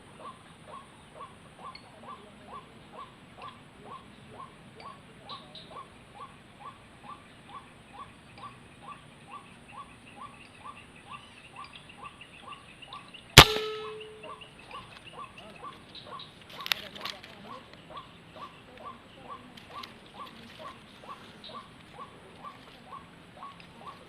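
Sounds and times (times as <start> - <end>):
repeated bird call: 0.2 - 16.7
air rifle shot: 13.4 - 14.3.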